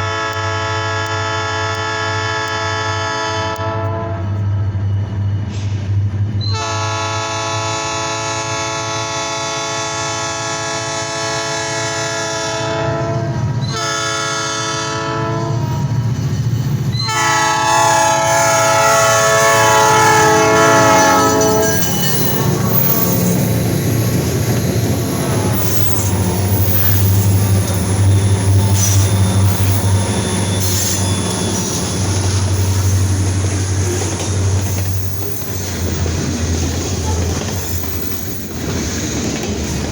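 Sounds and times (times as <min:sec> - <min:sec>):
locomotive horn blasts: 0:00.0 - 0:04.3, 0:06.5 - 0:15.9, 0:17.0 - 0:34.9
wheels clattering on rail: 0:15.8 - 0:39.9
diesel engine rumble: 0:19.0 - 0:39.9.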